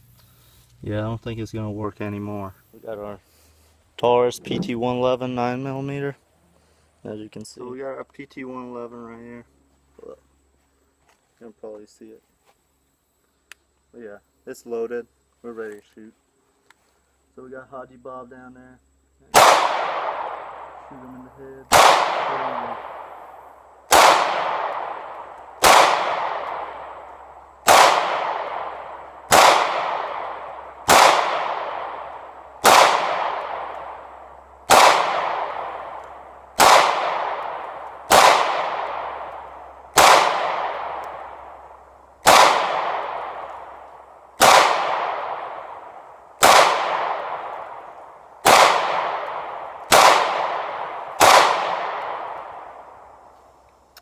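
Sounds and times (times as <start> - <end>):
pistol shots with long echo: 19.3 - 21.0, 21.7 - 53.3.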